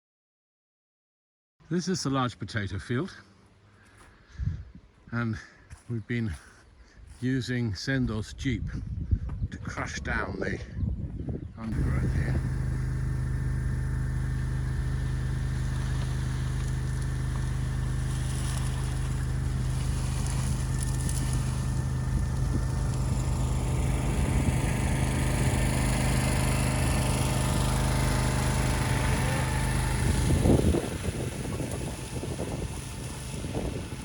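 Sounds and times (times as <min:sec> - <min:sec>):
vehicle engine idling: 0:11.7 - 0:34.0.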